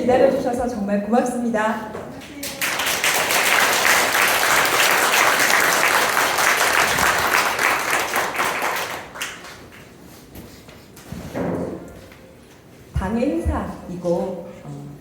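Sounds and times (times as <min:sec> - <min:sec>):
audience applauding: 0:02.4 - 0:09.7.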